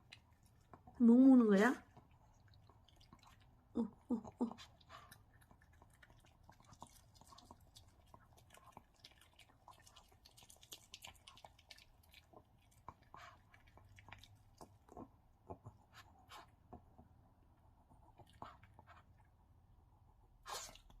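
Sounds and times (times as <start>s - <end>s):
dog chewing cabbage: 4.4s - 16.5s.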